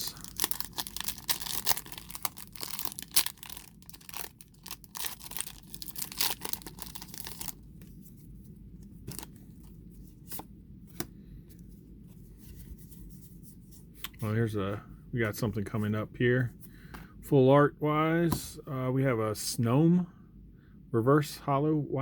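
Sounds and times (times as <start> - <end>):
foil wrapper tearing and crinkling: 0.0 - 7.6.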